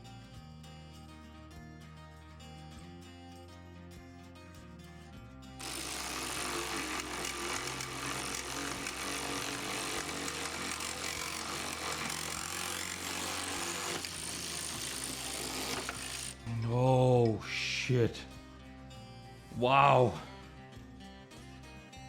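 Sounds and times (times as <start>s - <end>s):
power tool running under load: 5.6s - 16.4s.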